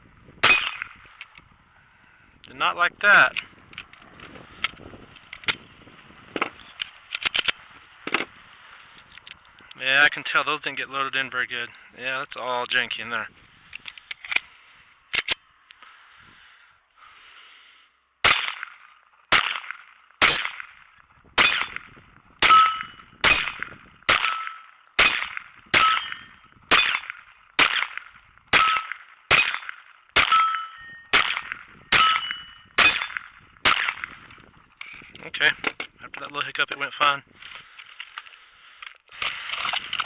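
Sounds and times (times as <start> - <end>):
pistol shots with metallic ring: 0.4 - 1.0, 18.2 - 34.1.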